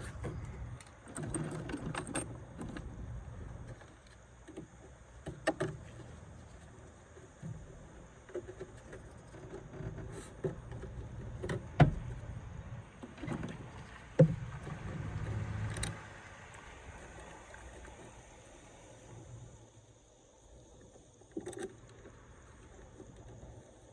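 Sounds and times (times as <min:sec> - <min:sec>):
knocks and clunks: 0:07.4 - 0:12.3, 0:13.0 - 0:16.0.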